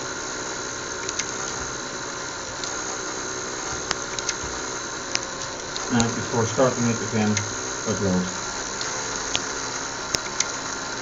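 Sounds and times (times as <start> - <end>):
mechanical hum with whirr: 0.0 - 11.0
sharp clicks: 1.0 - 1.8, 3.7 - 6.2.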